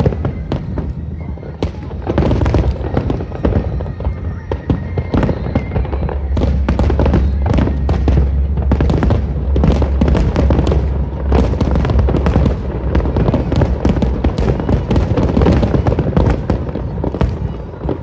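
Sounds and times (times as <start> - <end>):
fireworks crackling and popping: 0.0 - 18.0
low rumble: 0.0 - 18.0.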